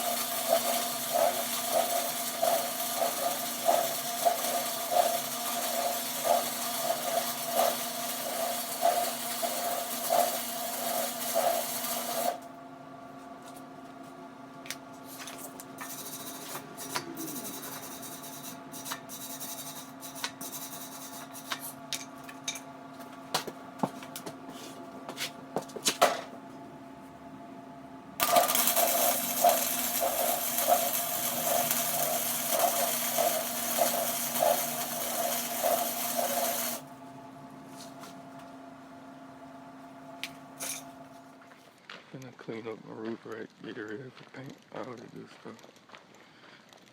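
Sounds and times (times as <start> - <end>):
welder crackling sizzle: 0.0 - 12.5, 28.2 - 36.9.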